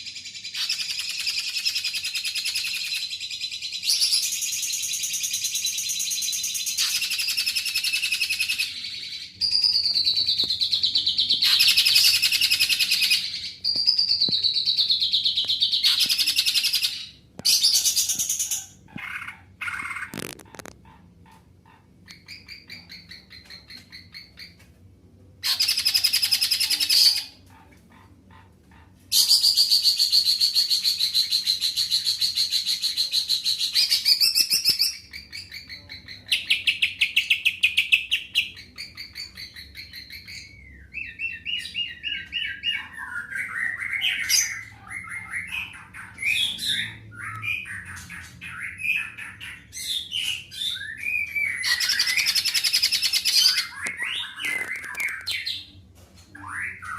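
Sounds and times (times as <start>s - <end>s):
bird chirping phrases: 29.2s - 56.9s.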